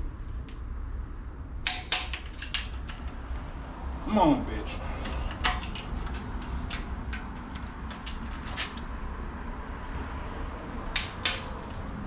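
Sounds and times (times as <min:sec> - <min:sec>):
wrench clicking and clinking: 0:01.6 - 0:03.2, 0:05.0 - 0:08.9, 0:10.9 - 0:11.8.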